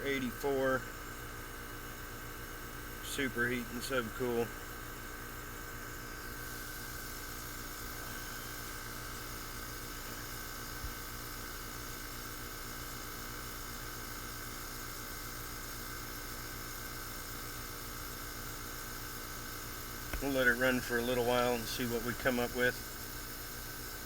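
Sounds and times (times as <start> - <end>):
heat pump whirring and humming: 0.0 - 24.0.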